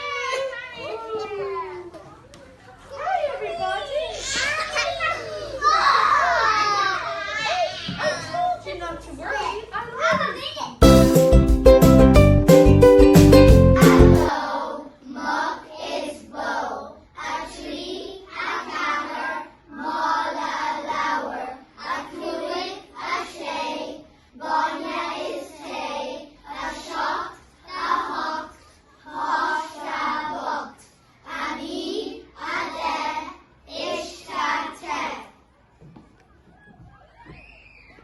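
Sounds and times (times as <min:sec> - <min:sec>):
children singing: 0:13.7 - 0:35.4.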